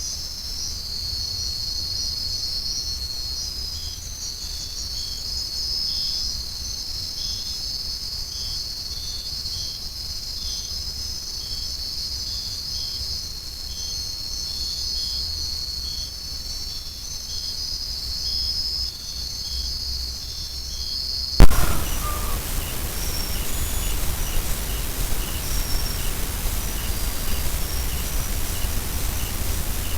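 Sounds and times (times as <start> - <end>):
insect chirping short notes: 21.4 - 29.9
insects shrill trill: 21.4 - 29.9.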